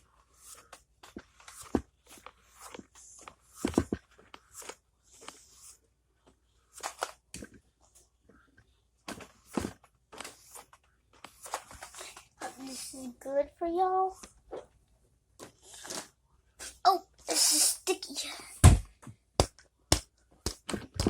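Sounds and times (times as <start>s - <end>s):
objects tapping and crunching: 19.4s - 21.0s.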